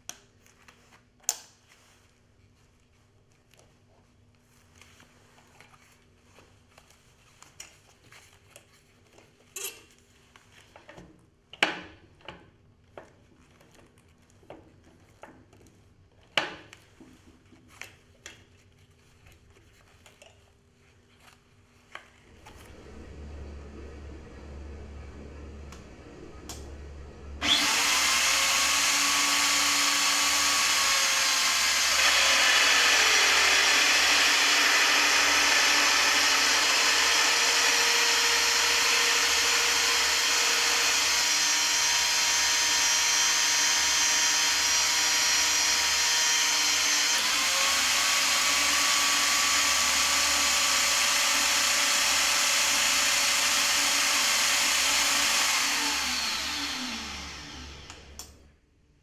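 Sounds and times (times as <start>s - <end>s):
cutter drilling into steel: 27.4s - 58.2s
drill motor whining: 27.4s - 58.2s.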